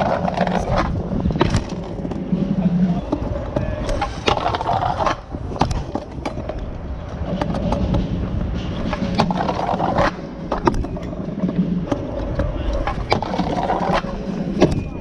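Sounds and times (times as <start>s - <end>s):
scooter landing clacks: 0.0s - 2.2s
scooter wheels grinding on ground: 0.0s - 15.0s.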